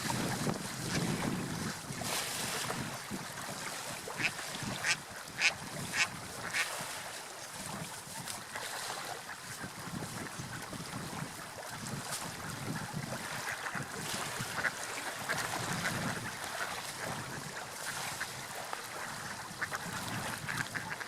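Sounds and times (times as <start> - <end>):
wind noise: 0.0 - 7.0, 9.5 - 18.3, 19.0 - 21.0
river water: 0.0 - 21.0
duck quacking: 4.2 - 6.6, 19.0 - 21.0.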